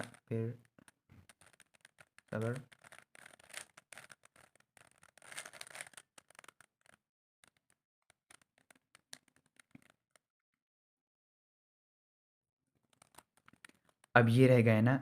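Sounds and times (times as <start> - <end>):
plastic cube clicking and scraping: 0.0 - 10.2, 12.9 - 14.2.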